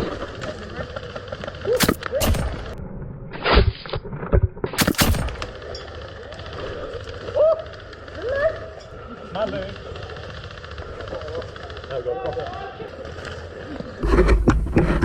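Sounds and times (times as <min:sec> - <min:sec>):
airsoft guns firing: 0:01.2 - 0:02.9, 0:04.8 - 0:08.3
distant shouts: 0:07.2 - 0:09.1.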